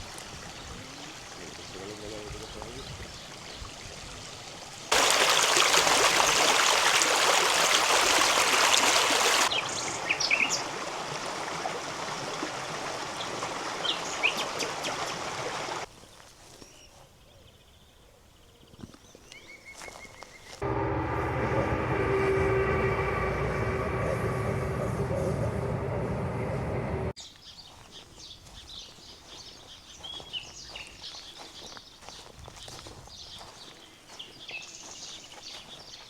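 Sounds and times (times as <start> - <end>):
river water flowing: 3.0 - 15.9.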